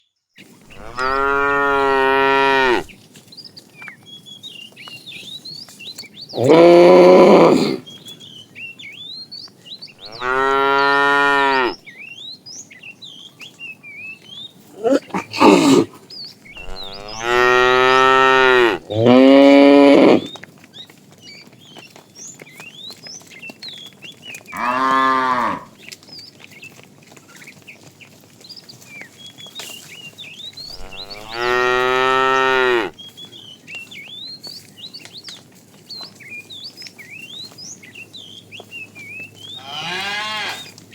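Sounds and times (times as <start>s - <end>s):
cattle mooing: 0.7s - 2.9s, 6.4s - 7.8s, 10.0s - 11.8s, 14.8s - 15.9s, 16.6s - 20.3s, 24.6s - 25.7s, 30.7s - 32.9s, 39.6s - 40.7s.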